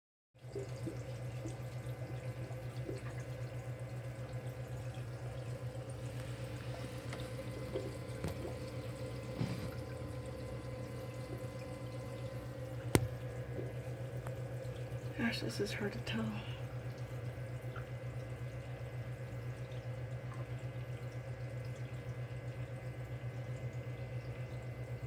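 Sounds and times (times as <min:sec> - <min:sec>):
drain line gurgling: 0:00.4 - 0:25.0
water trickling: 0:00.4 - 0:25.0
air burping through pipe: 0:09.2 - 0:10.2.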